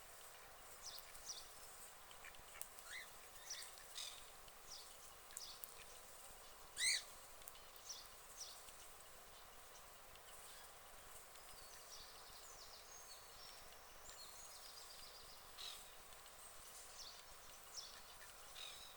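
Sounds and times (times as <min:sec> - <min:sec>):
faint background hiss: 0:00.0 - 0:18.9.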